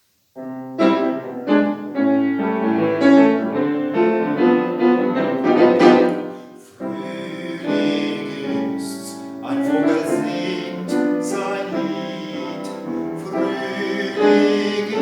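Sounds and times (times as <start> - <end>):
piano notes and chords: 0.4 - 15.0.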